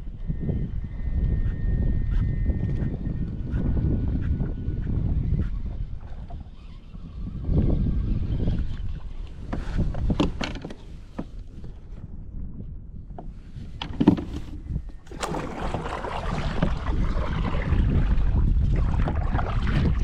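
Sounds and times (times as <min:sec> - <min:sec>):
wind buffeting microphone: 0:00.0 - 0:20.0
water slapping kayak hull: 0:13.8 - 0:20.0.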